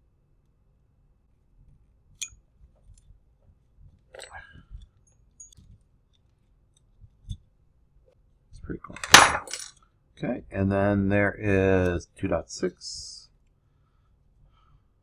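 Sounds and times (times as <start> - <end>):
small parts clicking and clinking: 3.9 - 7.4, 8.9 - 9.9.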